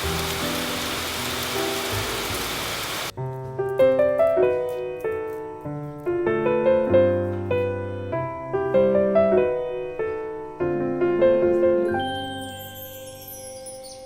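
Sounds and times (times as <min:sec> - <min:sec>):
rain hiss: 0:00.0 - 0:03.1
soft piano music: 0:00.0 - 0:14.0.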